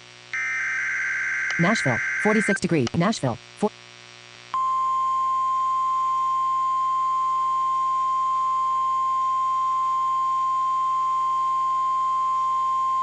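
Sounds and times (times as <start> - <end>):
steady pure warning tone: 0.3 - 2.9.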